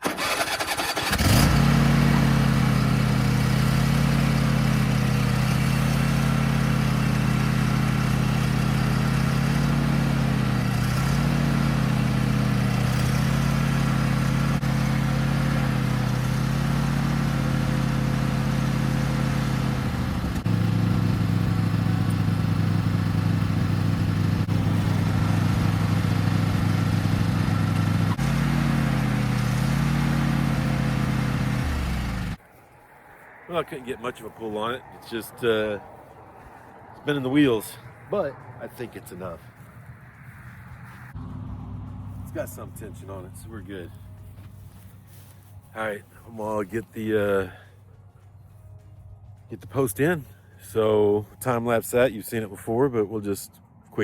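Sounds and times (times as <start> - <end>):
lawn mower engine straining: 0.0 - 32.4.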